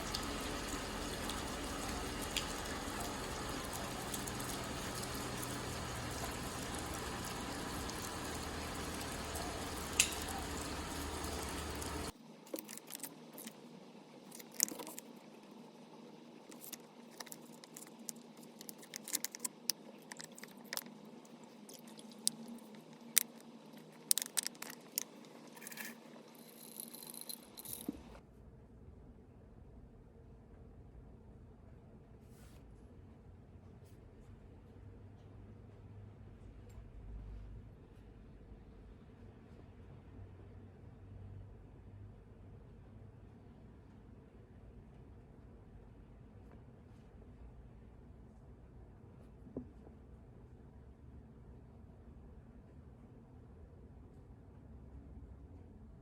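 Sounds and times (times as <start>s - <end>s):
steady rain: 0.0s - 12.1s.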